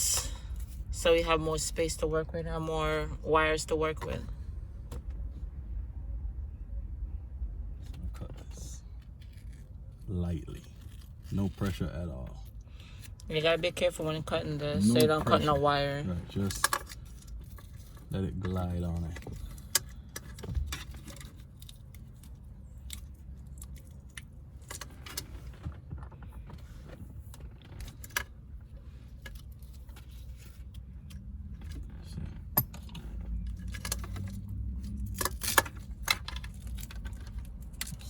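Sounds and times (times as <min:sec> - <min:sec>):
steady low rumble: 0:00.0 - 0:24.7
wiring harness clicks and rustles: 0:16.5 - 0:38.0.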